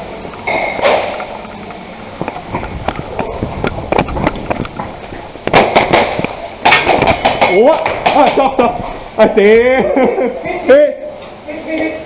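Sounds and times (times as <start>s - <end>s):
sharp cracks: 0.4s - 8.6s
quick footsteps: 2.2s - 9.0s.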